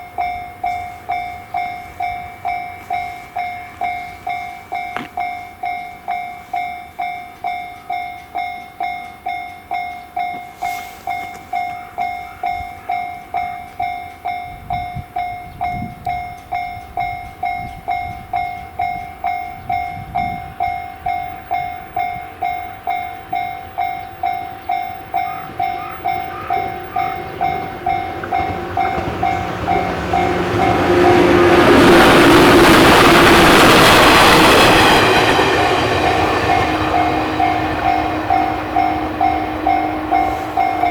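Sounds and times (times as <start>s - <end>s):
level crossing alarm bell: 0.0s - 40.9s
train passing: 0.0s - 40.9s.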